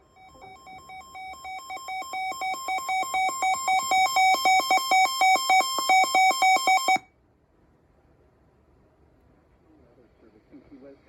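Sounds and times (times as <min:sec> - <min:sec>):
rapid two-pitch electronic beeps: 0:00.0 - 0:07.0.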